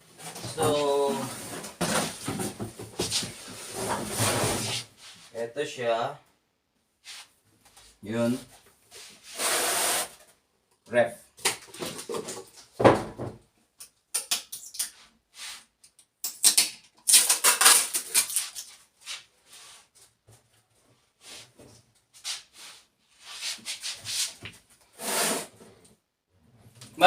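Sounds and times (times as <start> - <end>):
packaging rustling and clattering: 0.1 - 4.9.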